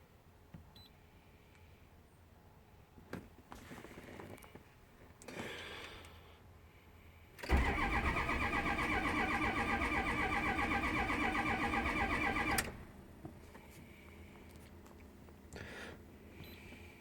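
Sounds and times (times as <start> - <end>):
truck engine cranking: 7.4 - 12.9.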